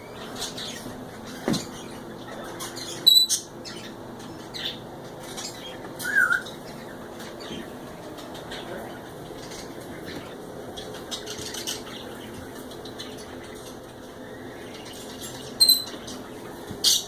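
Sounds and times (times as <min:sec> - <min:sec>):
steady background noise: 0:00.0 - 0:17.0
bird whistled chirp: 0:06.0 - 0:06.4.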